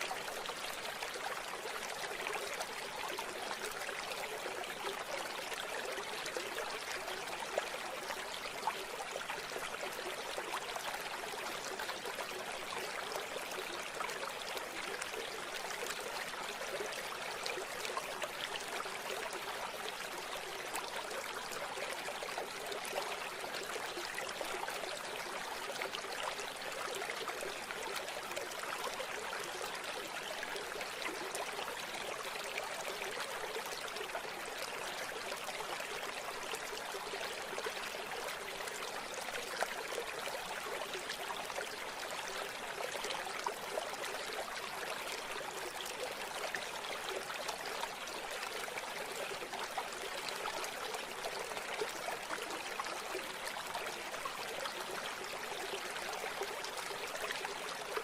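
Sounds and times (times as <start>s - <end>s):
river water flowing: 0.0s - 58.0s.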